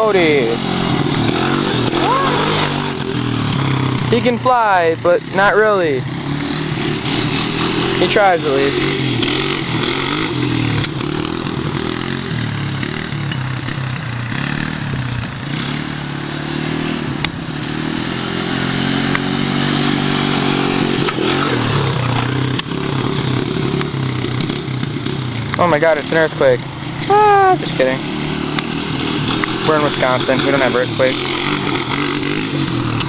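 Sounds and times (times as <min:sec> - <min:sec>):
atv engine revving: 0:00.0 - 0:33.0.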